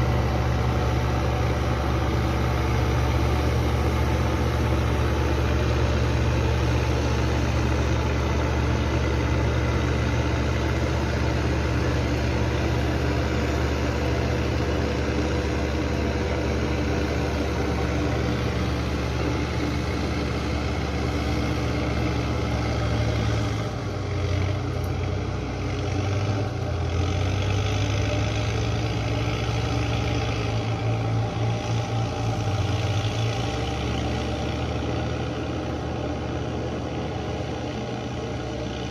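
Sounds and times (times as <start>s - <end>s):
heavy engine idling: 0.0s - 38.9s.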